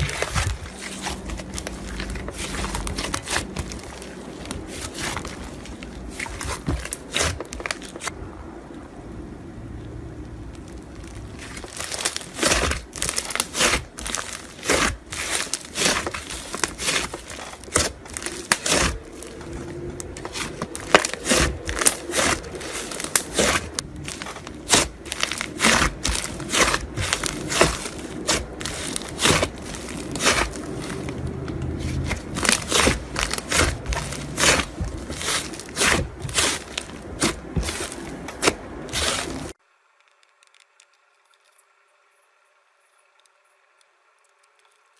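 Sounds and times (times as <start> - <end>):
slime crackling and popping: 0.0 - 8.2, 10.2 - 41.6.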